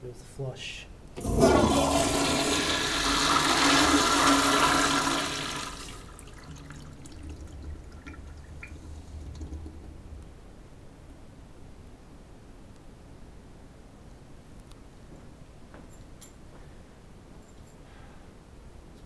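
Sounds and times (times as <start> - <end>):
toilet flushing: 1.2 - 10.1.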